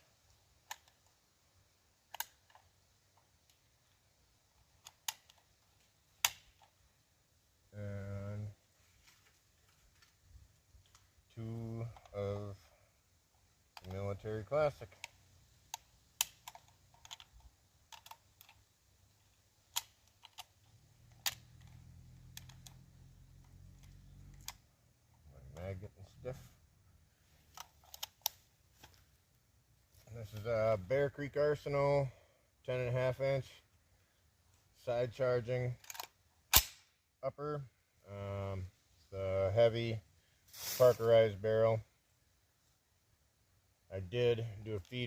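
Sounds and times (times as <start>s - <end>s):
cartridges clicking into magazine: 6.2s - 6.7s, 35.8s - 36.9s.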